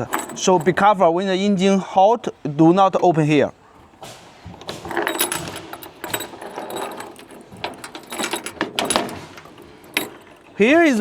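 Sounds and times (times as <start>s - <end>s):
metal covers clicking and rattling: 0.0s - 1.0s, 3.9s - 11.0s.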